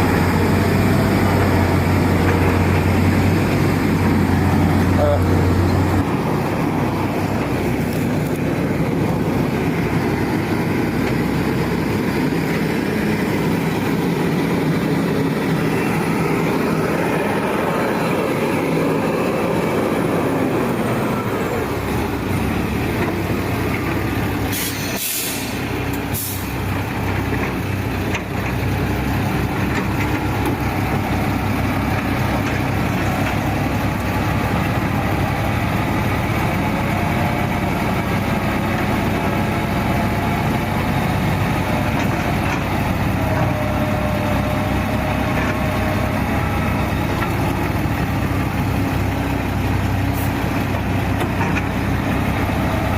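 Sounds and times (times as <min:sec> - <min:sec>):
truck diesel engine running: 0:00.0 - 0:52.9
air hisses: 0:24.5 - 0:26.5.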